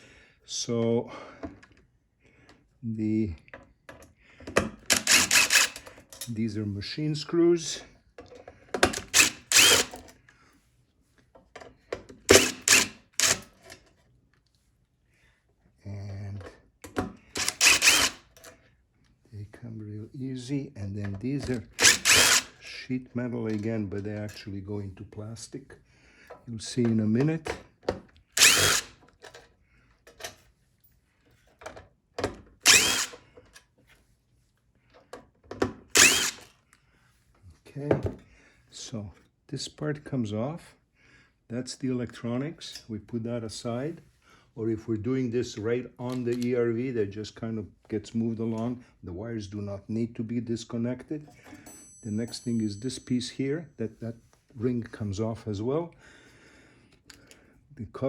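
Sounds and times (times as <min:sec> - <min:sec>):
impact driver spinning out screws: 0:04.8 - 0:05.9, 0:08.8 - 0:10.1, 0:12.3 - 0:13.6, 0:17.3 - 0:18.5, 0:21.7 - 0:22.6, 0:28.4 - 0:29.0, 0:32.6 - 0:33.3, 0:35.9 - 0:36.5.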